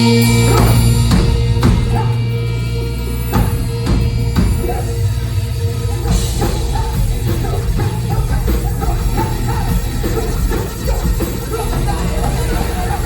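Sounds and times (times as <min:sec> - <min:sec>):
live band music: 0:00.0 - 0:13.0.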